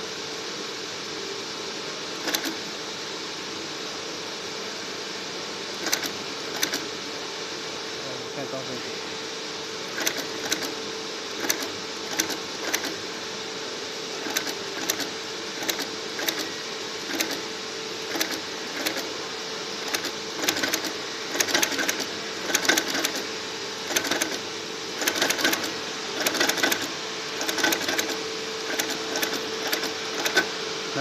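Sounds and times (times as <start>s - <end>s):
steady machine hum: 0.0s - 31.0s
sewing machine stitching clatter: 2.2s - 2.6s, 5.8s - 6.9s, 9.9s - 10.7s, 11.4s - 13.0s, 14.2s - 17.4s, 18.1s - 19.1s, 19.8s - 24.4s, 25.0s - 30.5s.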